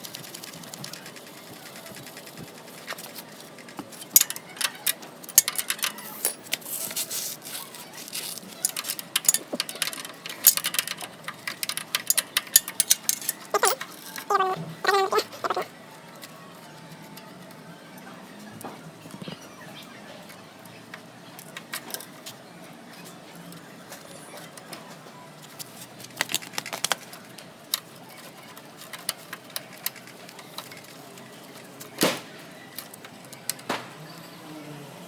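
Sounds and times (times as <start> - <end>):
metallic clinks of tools and parts: 4.0 - 7.0, 8.0 - 15.6.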